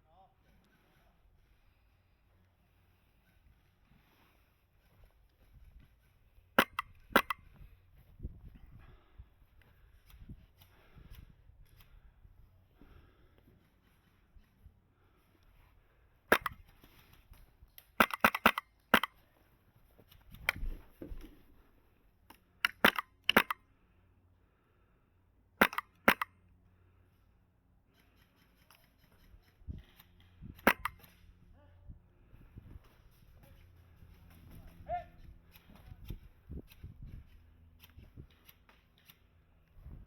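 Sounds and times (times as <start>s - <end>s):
airsoft rifle shots: 6.6s - 7.5s, 16.3s - 16.7s, 17.9s - 19.2s, 22.6s - 23.6s, 25.6s - 26.3s, 30.6s - 31.2s.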